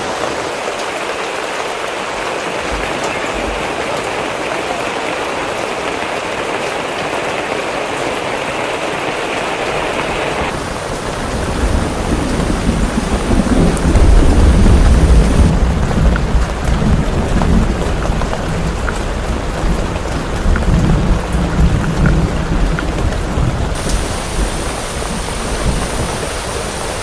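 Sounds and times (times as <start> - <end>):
heavy rain hissing: 10.1 - 15.6, 23.7 - 27.0
deep thunder rumble: 10.5 - 15.6, 23.8 - 27.0.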